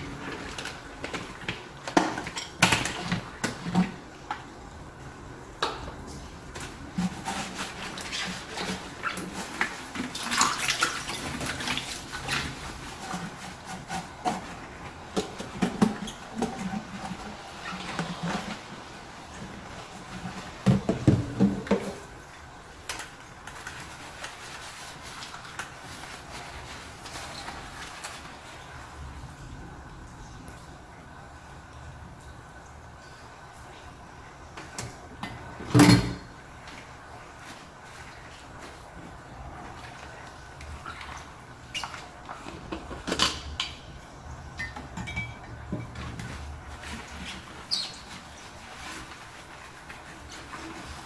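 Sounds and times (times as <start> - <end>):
running water: 0.0 - 51.0
dishes clinking: 44.8 - 46.4.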